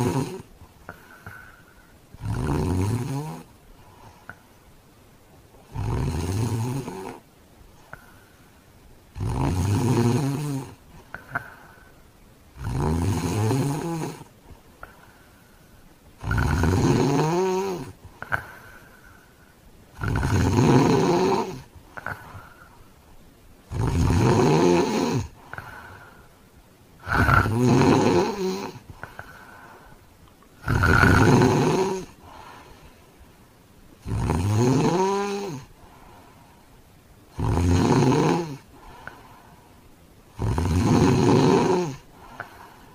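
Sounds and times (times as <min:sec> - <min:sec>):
man snoring heavily: 0:00.0 - 0:00.5, 0:02.2 - 0:03.5, 0:05.7 - 0:07.2, 0:09.1 - 0:10.8, 0:12.6 - 0:14.3, 0:16.2 - 0:18.5, 0:20.0 - 0:22.4, 0:23.7 - 0:26.0, 0:27.0 - 0:29.4, 0:30.6 - 0:32.6, 0:34.0 - 0:35.7, 0:37.3 - 0:39.1, 0:40.4 - 0:42.6.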